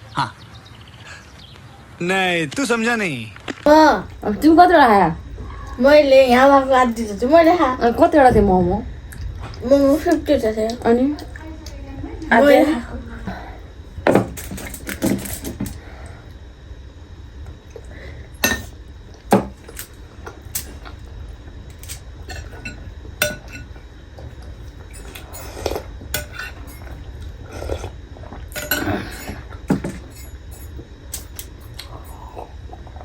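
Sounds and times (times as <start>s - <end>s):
low steady hum: 0.0s - 33.0s
cutlery clinking against dishes: 18.4s - 19.9s, 21.7s - 23.8s, 25.0s - 27.0s, 28.5s - 31.8s.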